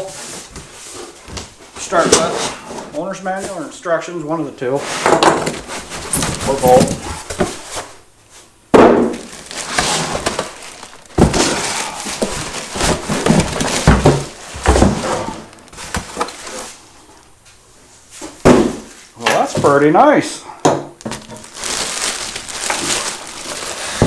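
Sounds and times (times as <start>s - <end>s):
cardboard and packing crinkling: 5.4s - 8.0s, 9.1s - 17.0s, 21.0s - 24.0s.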